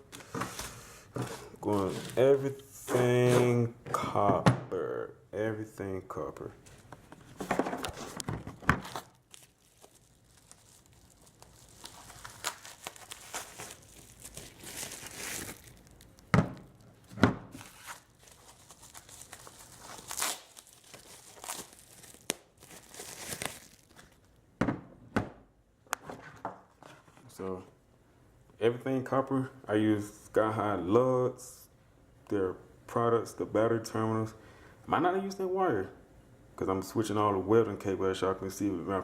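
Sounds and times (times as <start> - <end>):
plastic packaging crinkling and tearing: 7.8 - 24.4.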